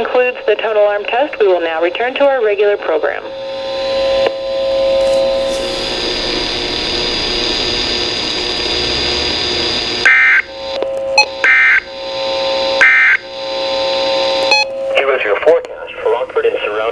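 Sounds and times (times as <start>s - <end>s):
radio static hiss: 4.8s - 10.7s, 11.4s - 16.9s.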